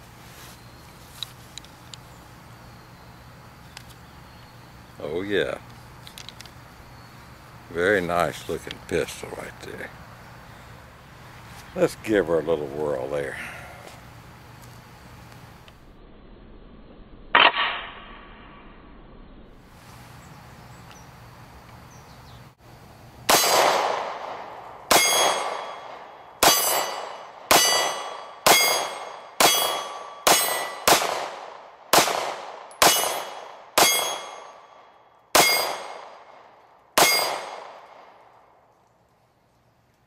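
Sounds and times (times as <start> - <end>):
pistol shots: 23.3 - 34.6, 35.3 - 36.4, 37.0 - 38.2
steel plate ringing: 24.9 - 30.9, 32.7 - 34.7, 35.4 - 36.0, 37.0 - 37.5.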